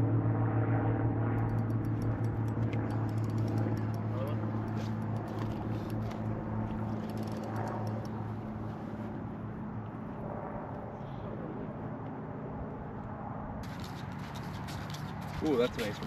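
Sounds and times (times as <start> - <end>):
small engine running: 1.4 - 8.6, 13.6 - 16.0.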